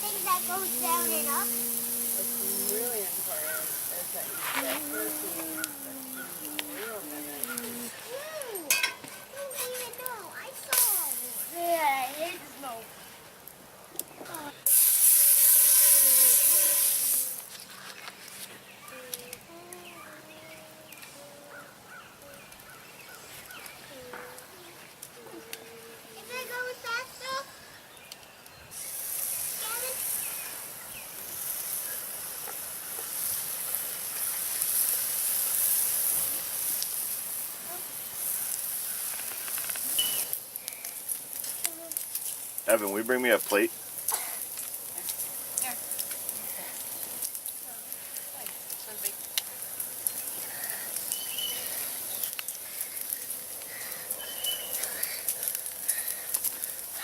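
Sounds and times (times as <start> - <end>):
bacon sizzling: 0.0 - 17.8, 25.5 - 27.6, 28.7 - 57.0
campfire crackling and popping: 0.0 - 19.9, 20.7 - 57.0
bird calling high notes: 54.2 - 54.8.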